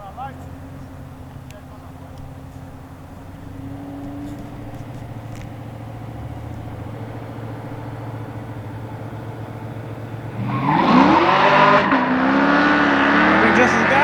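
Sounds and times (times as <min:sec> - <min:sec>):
low engine rumble: 0:00.0 - 0:10.5
race cars accelerating hard: 0:00.3 - 0:14.0.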